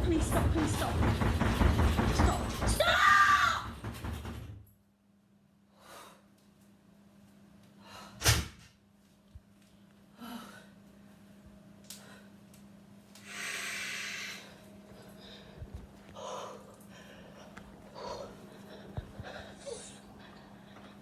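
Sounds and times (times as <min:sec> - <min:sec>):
faint electrical hum: 0:00.0 - 0:21.0
person breathing: 0:13.2 - 0:21.0.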